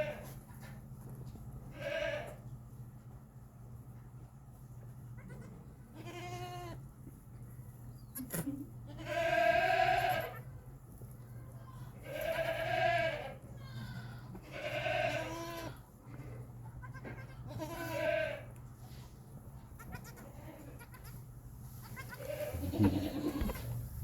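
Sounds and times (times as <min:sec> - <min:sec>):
goat bleating: 0:00.0 - 0:00.4, 0:01.7 - 0:02.4, 0:05.2 - 0:06.8, 0:08.1 - 0:10.5, 0:12.0 - 0:18.6, 0:19.7 - 0:23.8.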